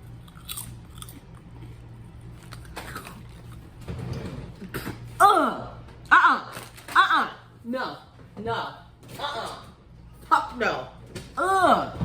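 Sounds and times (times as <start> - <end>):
person chewing a snack: 0.0 - 3.8.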